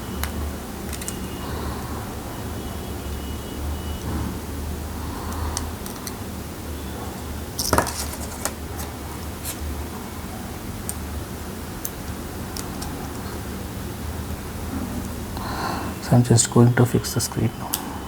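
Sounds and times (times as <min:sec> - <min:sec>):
small parts and tools clicking: 0:00.2 - 0:01.3, 0:05.3 - 0:06.2.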